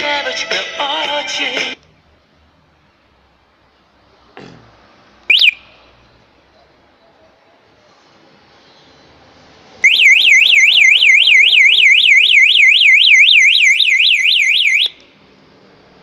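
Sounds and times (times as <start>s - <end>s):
motorcycle alarm siren warbling: 5.3s - 5.6s, 9.8s - 15.0s.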